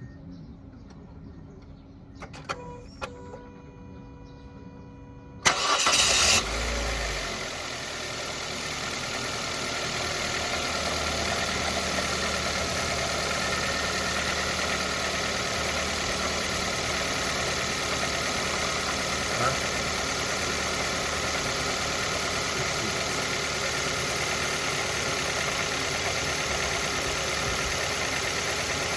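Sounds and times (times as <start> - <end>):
car engine idling: 3.5 - 28.9
starter motor cranking: 5.5 - 6.9.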